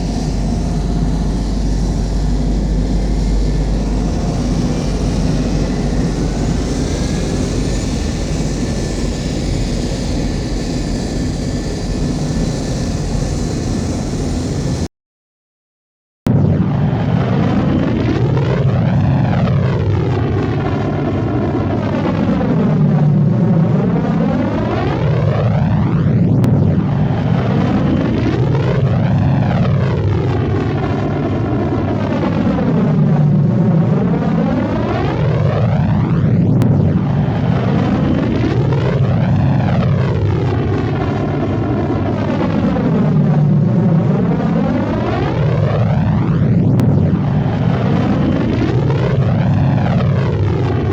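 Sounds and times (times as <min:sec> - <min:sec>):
swirling hiss: 0:00.0 - 0:14.6
low engine rumble with swirling sweep: 0:00.0 - 0:14.9, 0:26.6 - 0:50.9.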